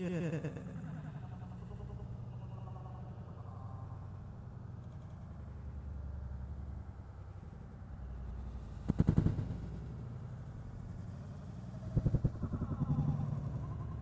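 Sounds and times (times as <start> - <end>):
helicopter rotor and engine drone: 8.4 - 14.0
loud rapid rotor thudding: 8.8 - 9.9.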